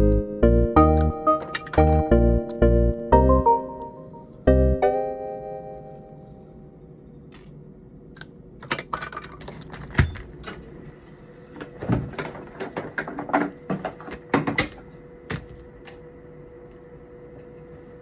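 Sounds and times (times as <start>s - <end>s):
faint machine hum: 0.0s - 18.0s
plastic parts clicking and knocking: 8.2s - 10.6s.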